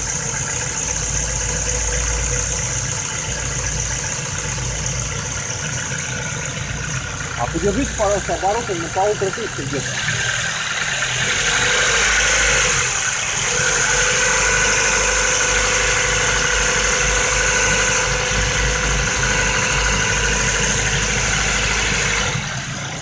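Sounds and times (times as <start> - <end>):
car engine idling with knock: 0.0 - 23.0.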